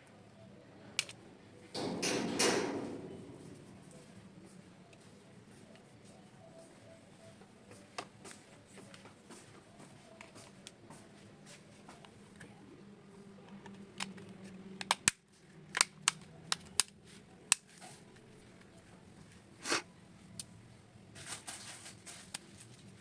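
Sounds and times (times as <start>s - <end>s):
plastic clicks and taps: 13.6s - 17.7s.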